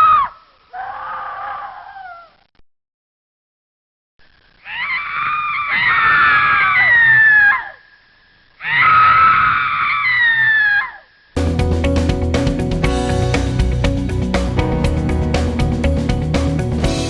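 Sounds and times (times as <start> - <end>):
high-pitched human screams: 4.7 - 7.8, 8.6 - 11.0
guitar music: 11.4 - 17.0.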